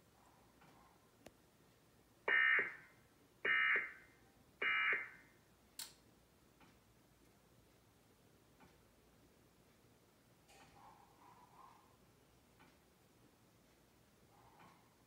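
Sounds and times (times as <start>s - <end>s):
sharp click: 5.8s - 6.0s.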